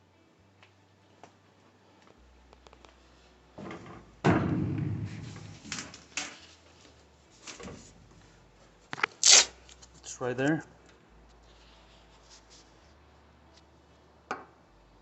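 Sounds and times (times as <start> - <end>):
sharp knock: 4.3 - 5.6.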